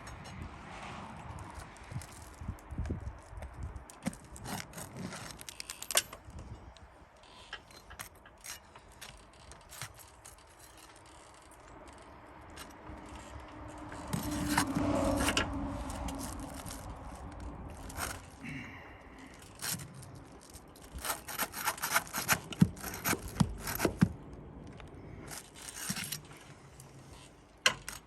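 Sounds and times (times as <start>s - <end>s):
metal tool scraping roof shingles: 12.7s - 18.5s, 19.3s - 24.3s, 25.0s - 28.0s.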